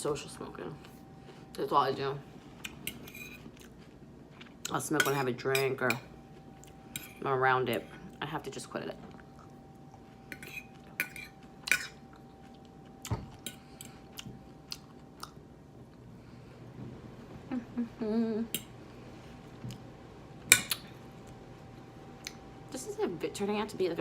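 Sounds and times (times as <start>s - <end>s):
chewing: 2.6s - 4.8s.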